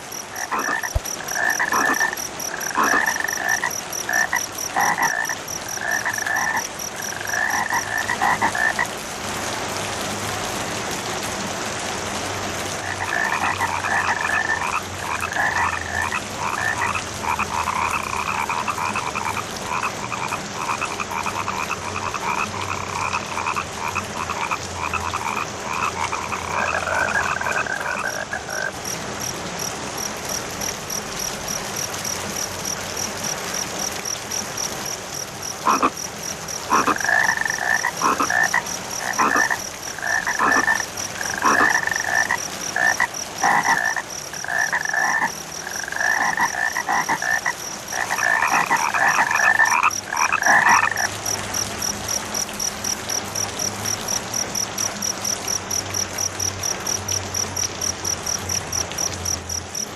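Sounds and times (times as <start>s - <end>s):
frogs croaking: 0.0s - 9.0s, 12.8s - 59.9s
rain hissing: 0.0s - 59.9s
cricket chirping: 33.8s - 53.0s.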